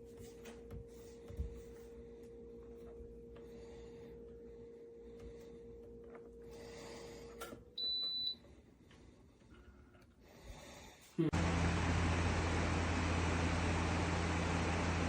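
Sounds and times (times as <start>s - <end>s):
low motor hum: 11.3s - 15.0s
fan air rush: 11.4s - 15.0s.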